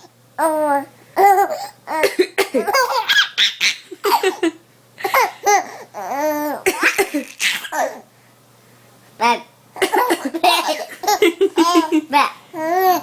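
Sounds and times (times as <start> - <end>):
baby laughing hard: 1.2 - 8.0, 9.8 - 13.0.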